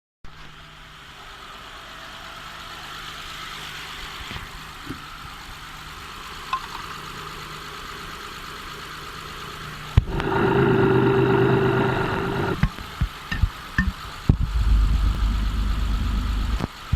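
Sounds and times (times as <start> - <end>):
car engine idling: 0.3 - 16.9
timing belt drive noise: 9.8 - 16.9.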